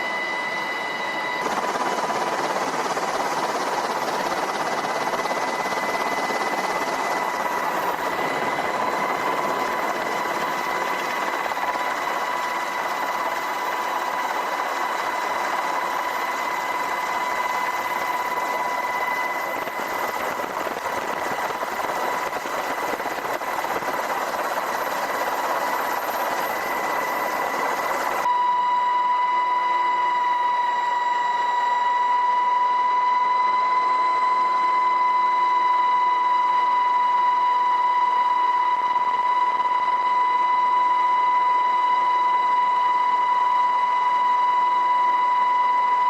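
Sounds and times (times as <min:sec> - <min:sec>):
helicopter running: 0:00.0 - 0:28.3
high whine: 0:00.0 - 0:35.5.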